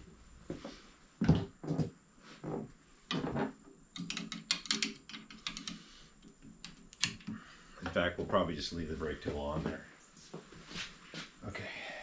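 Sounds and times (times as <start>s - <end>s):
tool clicks and rattles: 4.0s - 7.3s.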